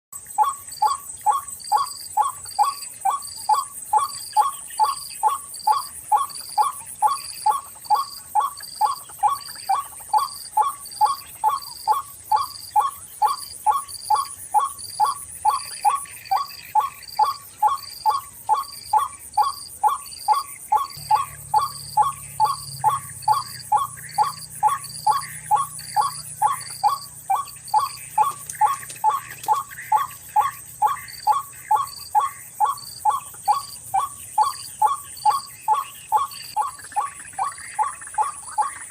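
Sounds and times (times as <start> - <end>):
high insect trill: 0.2 - 38.9
waterhen call repeated: 0.4 - 38.8
low hum: 21.0 - 28.6.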